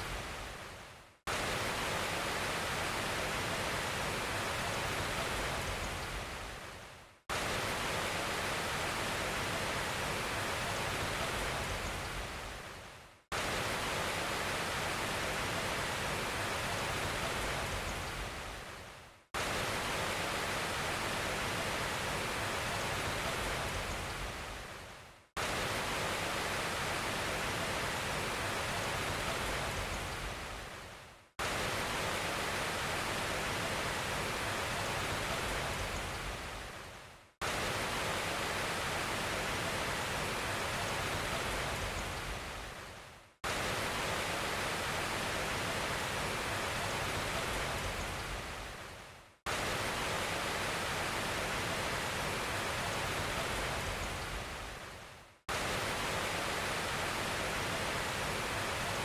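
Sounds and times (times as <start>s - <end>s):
rushing hiss of falling water: 49.5s - 54.7s, 55.5s - 59.0s.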